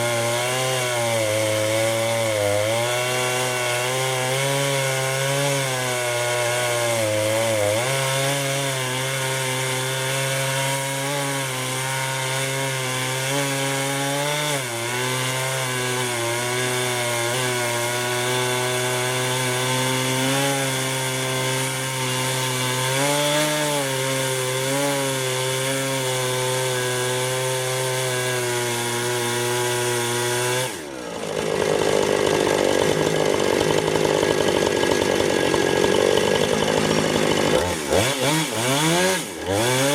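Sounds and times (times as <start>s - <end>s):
chainsaw ripping a log: 0.0s - 39.9s
loud rough noise: 31.1s - 39.9s.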